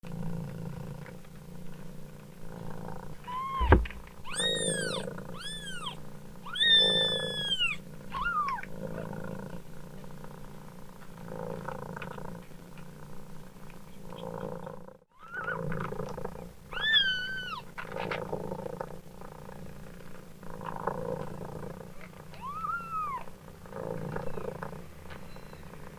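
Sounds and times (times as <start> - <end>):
cat purring: 0.0 - 25.9
kitten meowing: 3.2 - 8.7, 15.2 - 15.6, 16.7 - 17.6, 22.3 - 23.3
sharp knock: 3.6 - 4.0.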